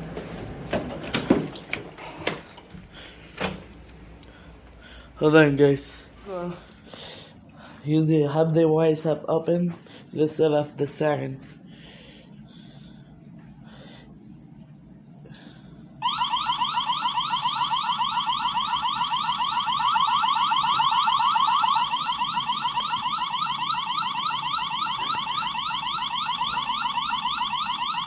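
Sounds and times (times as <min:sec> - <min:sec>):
security camera siren wailing: 0:16.0 - 0:28.0.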